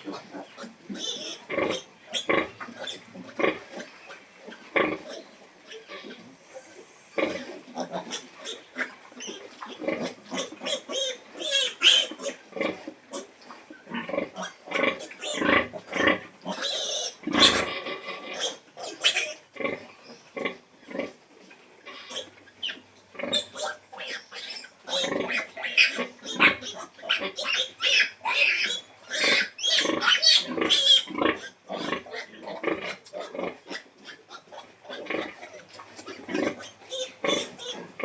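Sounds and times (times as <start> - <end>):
pig grunting: 13.9 - 18.5, 24.9 - 33.8.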